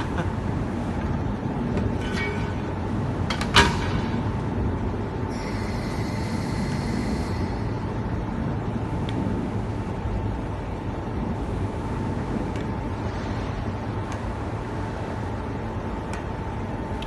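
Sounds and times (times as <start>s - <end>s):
hiss: 5.3s - 8.0s.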